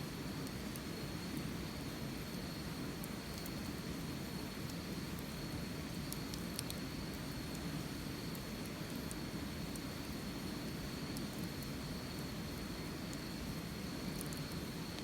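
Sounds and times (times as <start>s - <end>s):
wood fire burning: 0.1s - 15.0s
fire crackling and popping: 2.2s - 15.0s.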